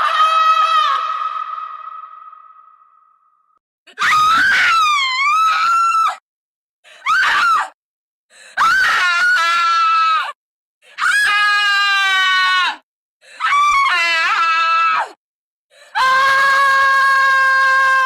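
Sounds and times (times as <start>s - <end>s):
woman screaming: 0.0s - 2.5s, 3.9s - 6.2s, 16.0s - 18.0s.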